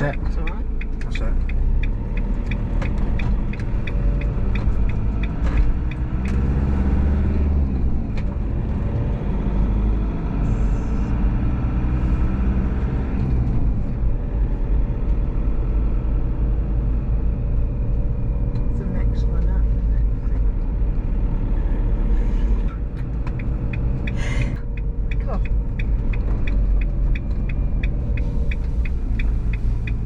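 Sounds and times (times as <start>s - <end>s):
motorhome engine and road rumble: 0.0s - 30.0s
rapid regular ticking: 23.4s - 30.0s.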